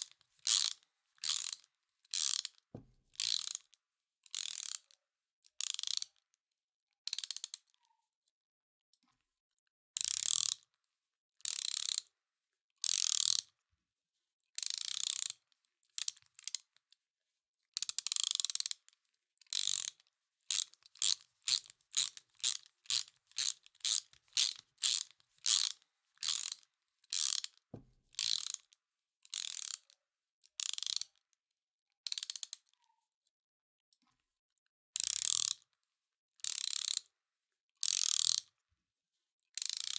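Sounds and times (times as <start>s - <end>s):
ratchet wrench clicking: 0.4s - 2.6s, 3.2s - 3.6s, 4.3s - 4.9s, 5.6s - 6.0s, 10.0s - 10.6s, 12.8s - 13.4s, 14.6s - 15.3s, 19.5s - 27.6s, 28.2s - 28.6s, 29.3s - 29.9s, 30.6s - 31.1s, 35.0s - 35.6s, 36.4s - 37.0s, 37.8s - 38.4s.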